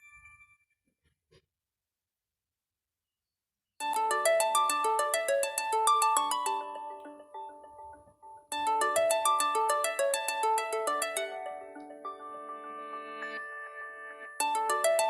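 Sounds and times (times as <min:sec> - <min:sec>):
phone ringtone melody: 0:03.8 - 0:15.0.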